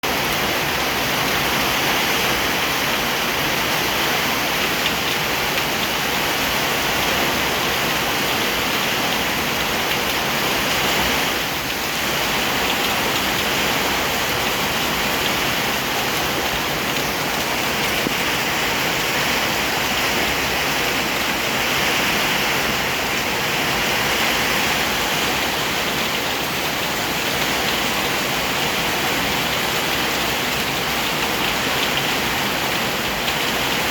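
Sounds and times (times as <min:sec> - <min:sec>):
heavy rain: 0:00.0 - 0:33.9.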